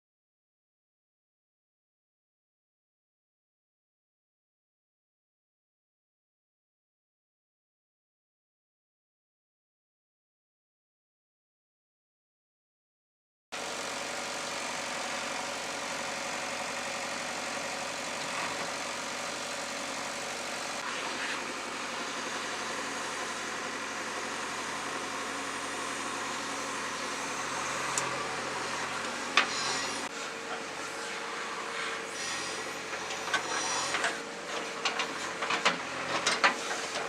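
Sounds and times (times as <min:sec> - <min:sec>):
diesel engine running: 0:13.6 - 0:37.0.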